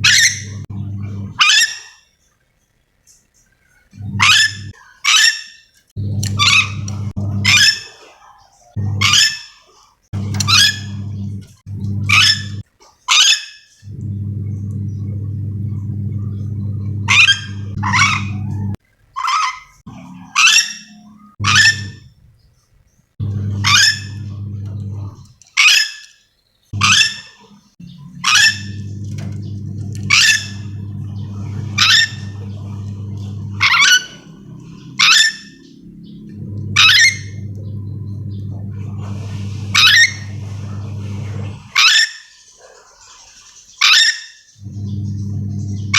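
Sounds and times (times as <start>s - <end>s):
steady low hum: 0.0s - 1.4s, 4.0s - 4.8s, 6.0s - 7.6s, 10.2s - 12.6s, 13.9s - 18.8s, 23.2s - 25.3s, 27.8s - 41.8s, 44.6s - 45.9s.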